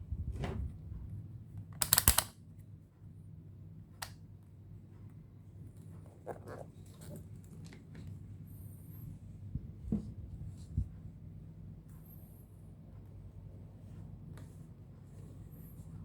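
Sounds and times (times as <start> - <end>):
multimeter probes clicking: 1.8 - 2.4.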